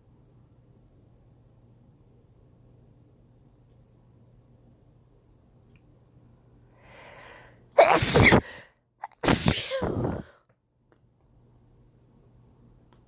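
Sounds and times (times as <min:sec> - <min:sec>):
soft in-breath: 0:06.8 - 0:10.3
person sneezing: 0:07.8 - 0:10.4.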